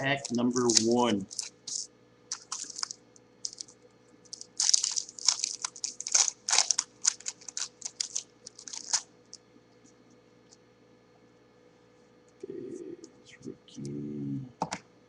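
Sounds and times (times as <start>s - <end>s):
card pack wrapper tearing and crinkling: 0.0s - 3.7s, 4.3s - 9.1s.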